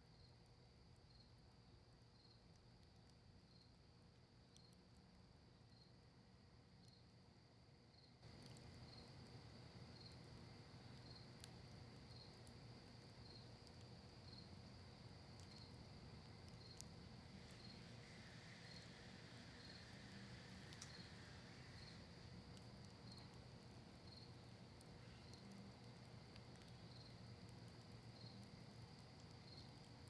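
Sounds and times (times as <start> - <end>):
insect chirping: 7.9 - 30.0
campfire crackling: 8.2 - 30.0
fire popping: 8.2 - 30.0
low rush of fire: 8.2 - 30.0.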